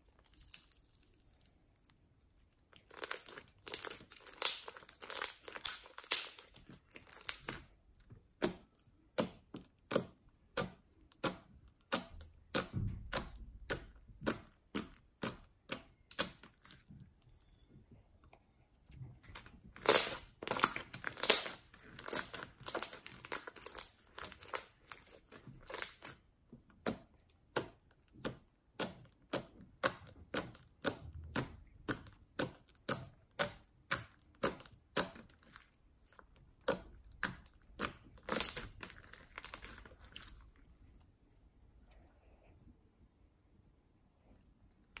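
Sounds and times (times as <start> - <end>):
slime crackling pops: 2.8 - 7.7, 19.8 - 26.2, 36.6 - 40.3.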